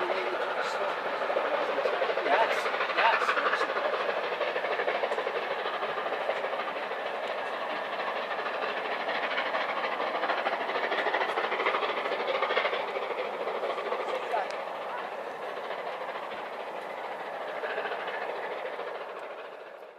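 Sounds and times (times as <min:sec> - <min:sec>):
train wheels on rails: 0:00.0 - 0:19.9.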